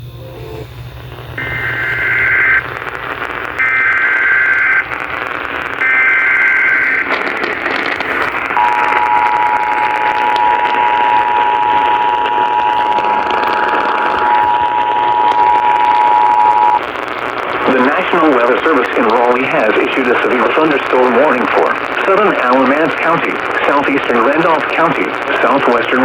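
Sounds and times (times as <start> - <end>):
radio hiss: 0.0 - 26.0
warbling data bursts: 0.0 - 26.0
two-tone attention signal: 8.6 - 16.8.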